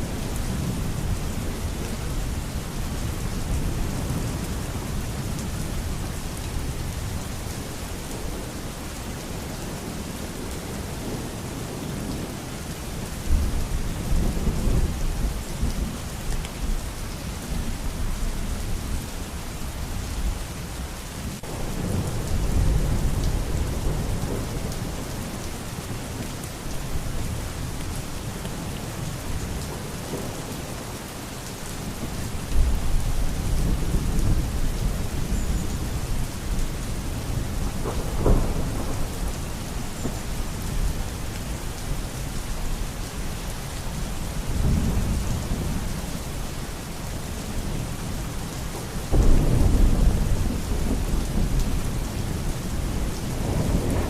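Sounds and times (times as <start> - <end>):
heavy rain: 0.0 - 54.0
thunder rumbling and cracking: 36.0 - 40.2, 49.1 - 54.0.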